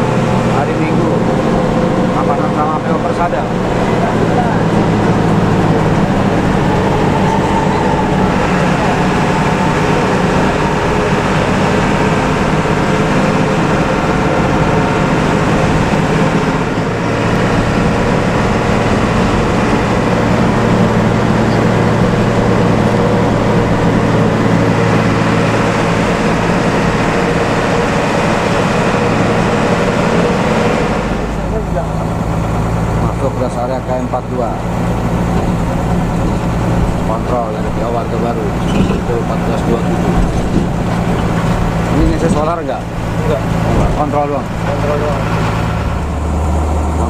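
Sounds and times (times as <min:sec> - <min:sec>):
bus engine running: 0:00.0 - 0:47.0
tyre and road noise: 0:00.0 - 0:47.0.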